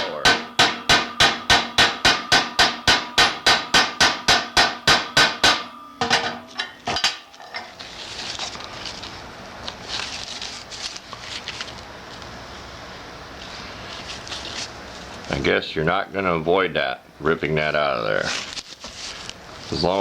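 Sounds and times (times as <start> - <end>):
hammer striking metal tool: 0.0 - 7.3
scraping and rustling: 6.2 - 12.3, 13.3 - 15.4, 18.1 - 20.0.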